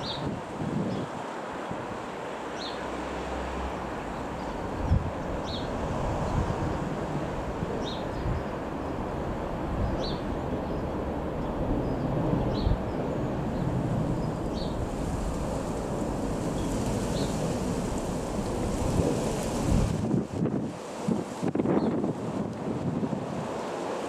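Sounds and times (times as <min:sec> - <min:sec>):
wind buffeting microphone: 0:00.0 - 0:02.0, 0:03.8 - 0:23.6.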